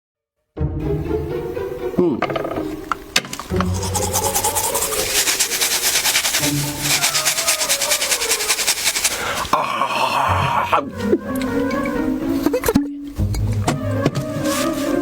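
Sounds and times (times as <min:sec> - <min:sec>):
rapid rasping scrape: 0:03.6 - 0:09.6.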